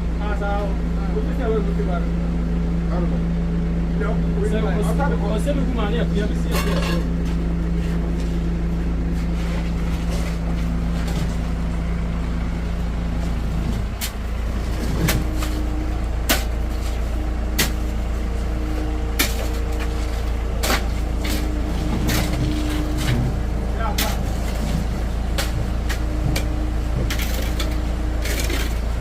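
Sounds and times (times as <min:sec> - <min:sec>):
engine running: 0:00.0 - 0:29.0.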